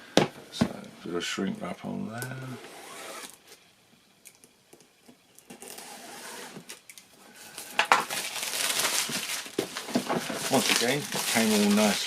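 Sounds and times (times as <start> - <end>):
plastic shrink wrap crinkling: 7.4 - 12.0.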